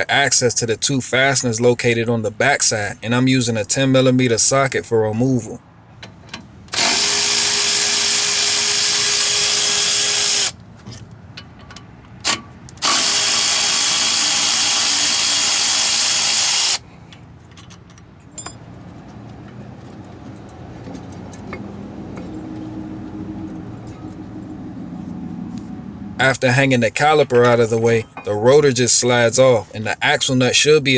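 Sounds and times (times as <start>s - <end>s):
power tool motor whine: 6.7s - 10.6s, 12.8s - 16.8s
light metal clinks: 17.1s - 18.8s.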